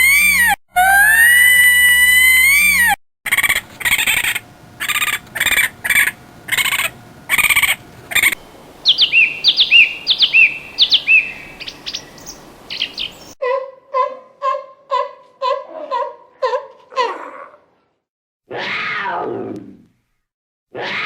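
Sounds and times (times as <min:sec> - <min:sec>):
high held animal call: 0:00.0 - 0:17.1
bird chirping: 0:03.5 - 0:13.4.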